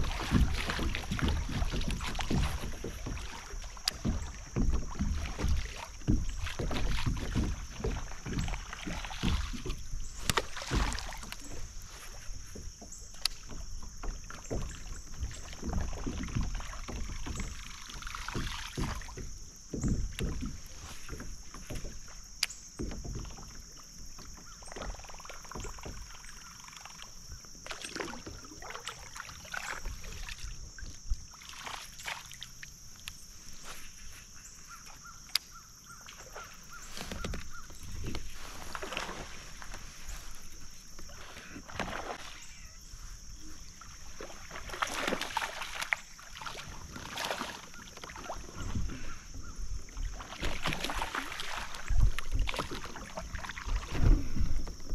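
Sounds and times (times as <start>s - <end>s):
knocks against kayak hull: 0.0s - 11.8s, 12.4s - 25.0s
paddle strokes splashing water: 0.0s - 54.9s.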